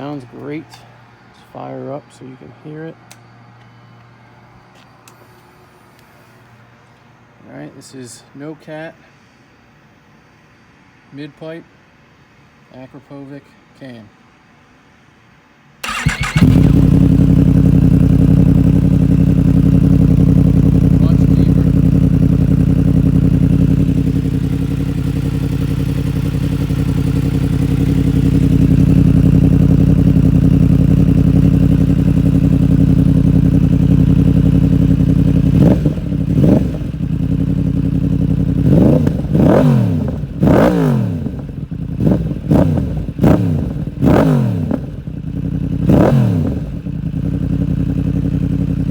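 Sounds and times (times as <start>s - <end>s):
motorcycle engine idling: 15.8s - 48.9s
motorcycle throttle blips: 15.8s - 48.9s.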